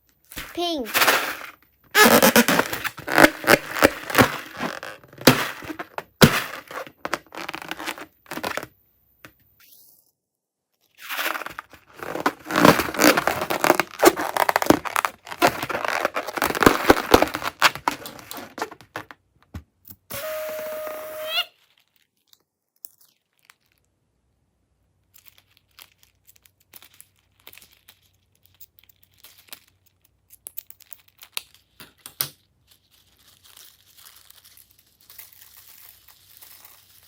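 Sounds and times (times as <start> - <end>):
slime crackling and popping: 11.9 - 18.5.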